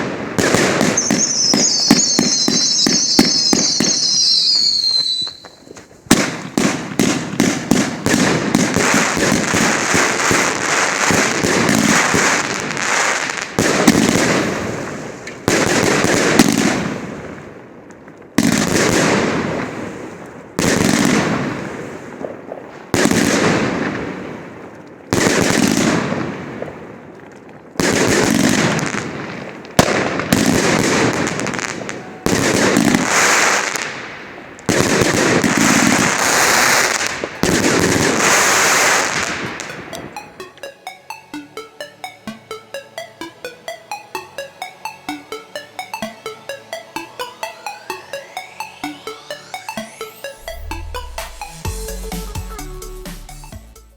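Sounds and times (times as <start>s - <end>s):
firework cake volley: 0.0s - 17.5s
loud firework bursts crackling: 0.0s - 17.5s, 27.8s - 39.9s.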